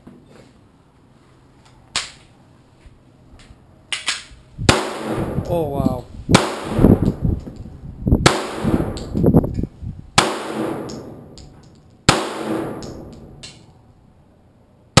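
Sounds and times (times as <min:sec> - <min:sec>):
pistol shots echoing: 0:04.7 - 0:05.7, 0:06.3 - 0:07.2, 0:08.2 - 0:09.1, 0:10.2 - 0:13.6.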